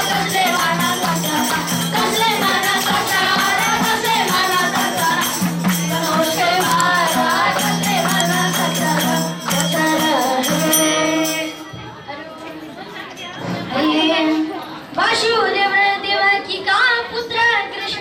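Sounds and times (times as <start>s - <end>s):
young people singing devotional song: 0.0s - 12.3s
rhythmic percussion: 0.0s - 14.3s.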